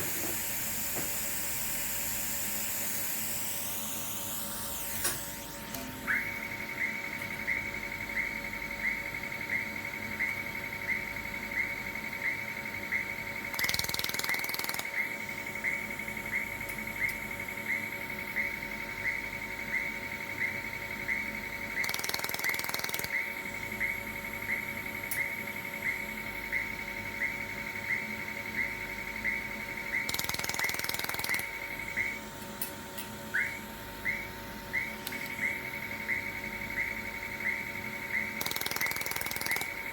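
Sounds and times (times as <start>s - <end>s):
machine hum: 0.0s - 39.9s
laser welder pulse ticks: 0.4s - 8.3s, 13.4s - 18.4s, 19.8s - 24.0s, 29.3s - 33.5s, 34.8s - 39.9s.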